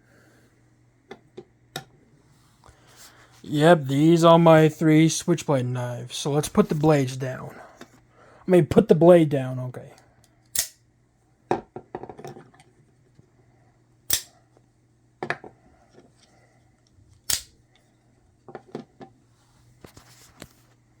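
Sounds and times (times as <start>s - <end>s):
switchblade snapping shut: 10.6s - 10.8s, 14.1s - 14.3s, 17.3s - 17.5s.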